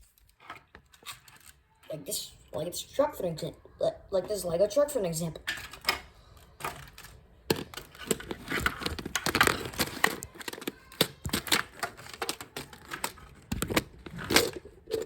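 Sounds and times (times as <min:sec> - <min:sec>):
plastic clicking and rattling: 0:05.4 - 0:15.0.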